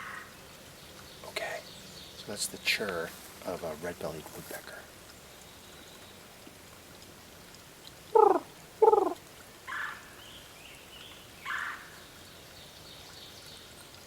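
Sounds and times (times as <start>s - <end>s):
woodpecker churr call: 8.1s - 10.0s.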